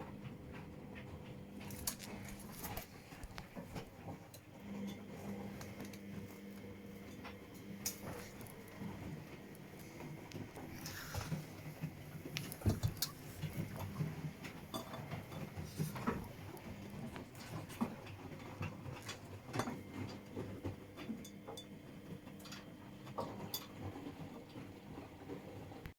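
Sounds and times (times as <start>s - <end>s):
washing machine motor hum: 0.0s - 25.9s.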